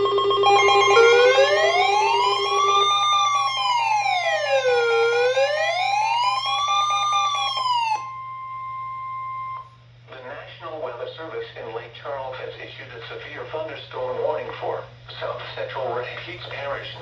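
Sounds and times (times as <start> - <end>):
steady alert tones: 0.0 - 8.5
emergency siren wailing: 0.0 - 9.6.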